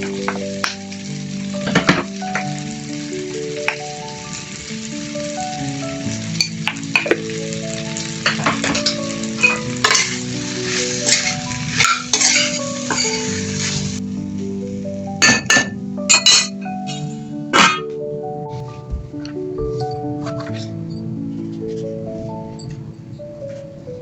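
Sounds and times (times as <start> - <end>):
food sizzling in a frying pan: 0.0 - 17.2
soft background melody: 0.0 - 24.0
spatula scraping pan: 8.3 - 14.0.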